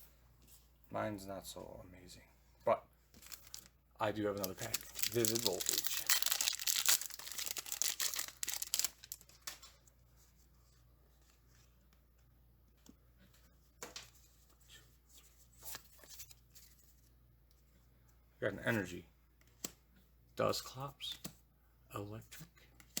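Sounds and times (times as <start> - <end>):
trading cards rustling: 3.1 - 9.8
foil wrapper tearing and crinkling: 3.2 - 3.7, 4.4 - 9.6.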